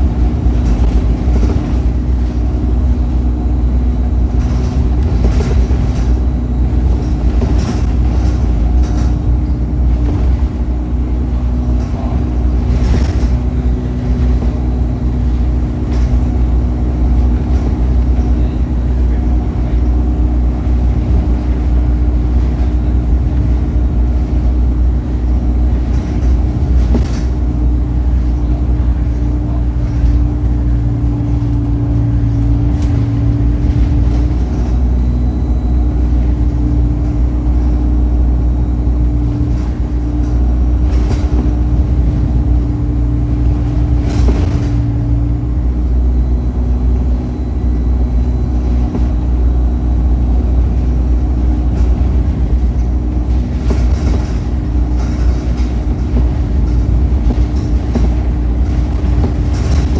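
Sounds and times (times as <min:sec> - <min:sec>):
short knocks and rattles: 0:00.0 - 0:10.9, 0:32.4 - 0:45.2, 0:48.4 - 0:59.9
bus diesel engine rumbling: 0:00.0 - 0:59.9.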